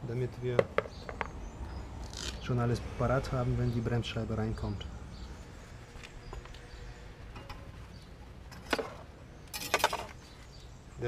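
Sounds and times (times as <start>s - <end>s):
brake pads clinking and rattling: 8.5s - 10.6s.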